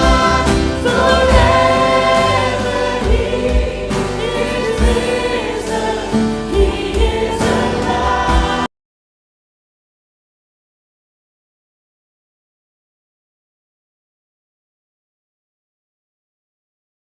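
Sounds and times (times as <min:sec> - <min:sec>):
low drum beats: 0:00.0 - 0:08.7
sustained instruments: 0:00.0 - 0:08.7
voices singing held notes: 0:00.0 - 0:08.7.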